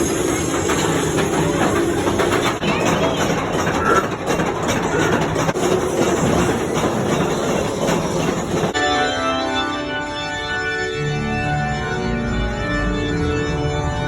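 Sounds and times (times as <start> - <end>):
mine train rumbling on track: 0.0 - 8.8
organ playing held chords: 8.8 - 14.0.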